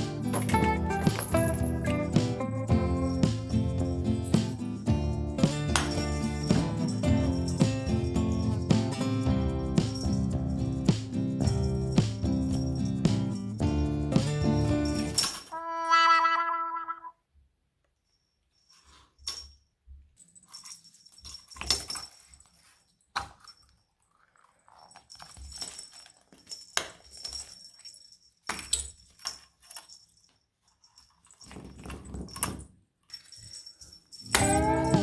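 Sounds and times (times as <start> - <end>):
toy bell jingling: 0.1 - 4.8, 5.4 - 8.7, 33.1 - 35.0.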